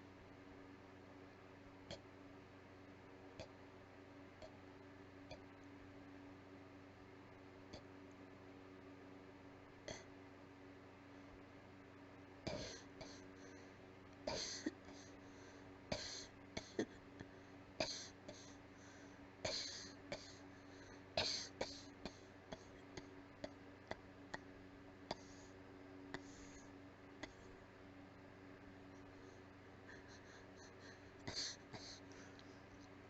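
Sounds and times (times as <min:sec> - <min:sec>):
person coughing weakly: 0:14.3 - 0:15.1, 0:31.3 - 0:32.0.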